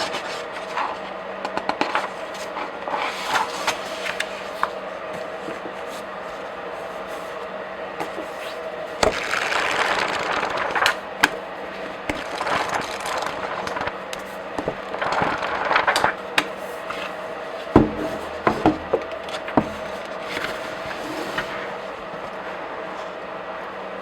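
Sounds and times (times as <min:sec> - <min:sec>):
pages slapping flat: 0:01.8 - 0:04.8, 0:08.0 - 0:17.1
pages flipping: 0:01.8 - 0:06.1, 0:08.0 - 0:17.2, 0:18.0 - 0:21.7.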